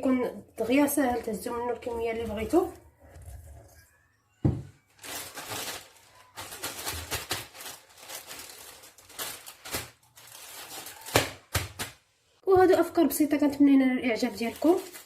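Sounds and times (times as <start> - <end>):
packaging crinkling and rustling: 4.8 - 12.0, 14.2 - 15.0.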